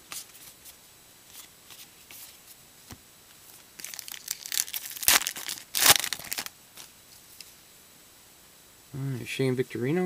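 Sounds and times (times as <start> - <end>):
wrapper tearing and crinkling: 3.8 - 6.9.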